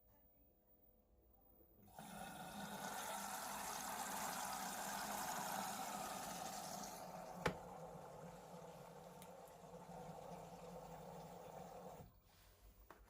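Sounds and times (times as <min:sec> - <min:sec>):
water rushing into washing appliance: 0:01.9 - 0:12.2.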